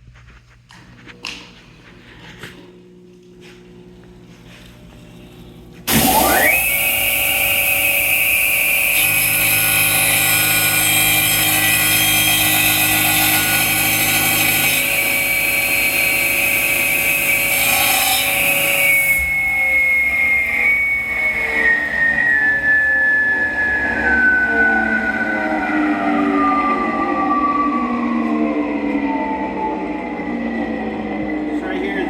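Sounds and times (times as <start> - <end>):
chop saw motor whining: 2.1 - 32.0
saw blade cutting metal: 5.9 - 24.9.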